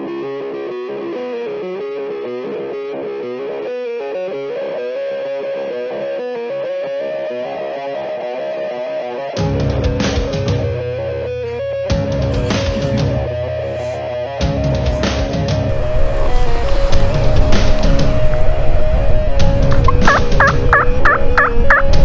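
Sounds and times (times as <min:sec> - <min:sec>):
bass: 0:09.4 - 0:22.0
distorted electric guitar melody: 0:15.7 - 0:22.0.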